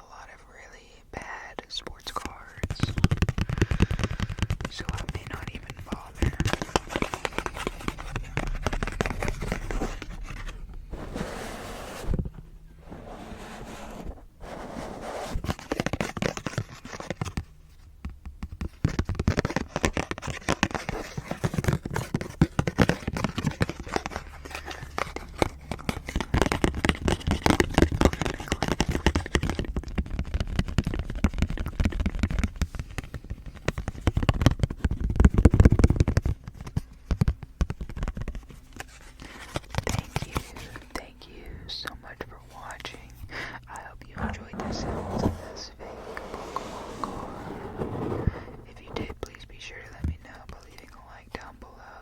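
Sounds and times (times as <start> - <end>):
card crackling scratching and tapping: 2.0 - 17.4, 43.8 - 51.5.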